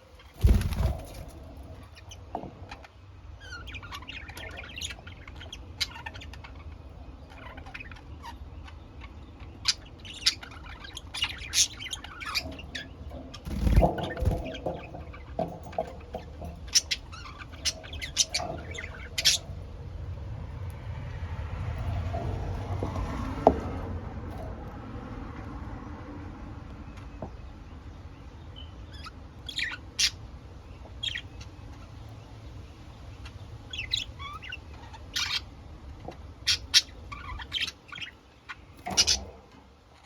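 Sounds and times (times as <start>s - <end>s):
budgerigars chirping: 0.0s - 19.7s, 28.6s - 30.2s, 30.8s - 35.5s, 36.4s - 39.4s.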